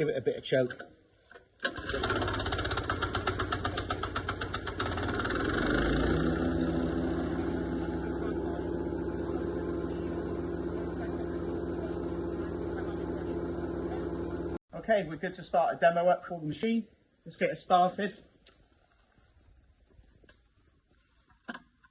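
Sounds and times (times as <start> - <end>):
small petrol engine running: 1.6 - 14.6.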